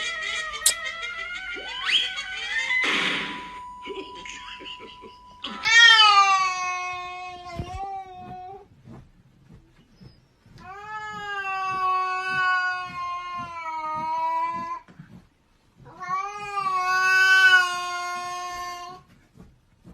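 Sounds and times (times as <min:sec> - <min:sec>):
cat yowling: 0:00.0 - 0:03.4, 0:05.5 - 0:08.6, 0:10.6 - 0:14.8, 0:15.9 - 0:19.0.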